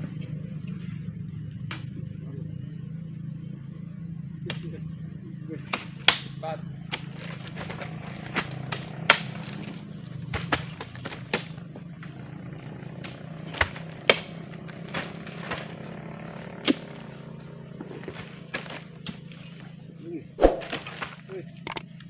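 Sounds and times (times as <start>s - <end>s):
sharp knocks and clicks: 21.6s - 21.9s.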